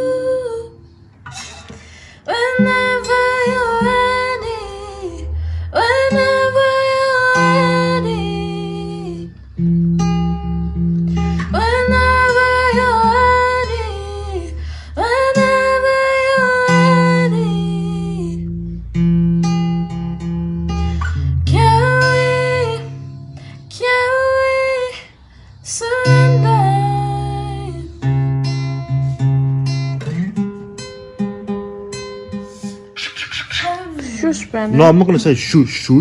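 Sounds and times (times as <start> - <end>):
woman singing slow song: 0.0 - 1.0, 2.1 - 9.5, 11.4 - 18.5, 21.0 - 28.1
acoustic guitar: 0.0 - 36.0.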